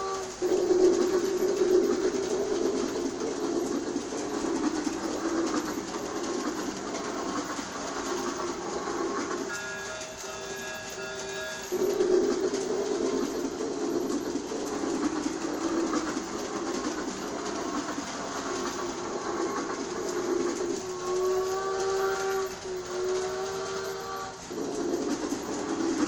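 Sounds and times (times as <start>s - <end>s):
train whistle: 0.0s - 2.0s, 8.0s - 14.3s, 19.3s - 25.9s
toy train rumbling clatter: 0.0s - 26.0s.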